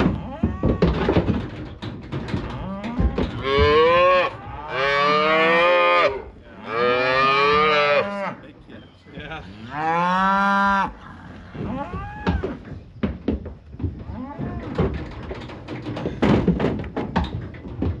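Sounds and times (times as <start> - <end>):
cattle mooing: 2.6 - 8.4.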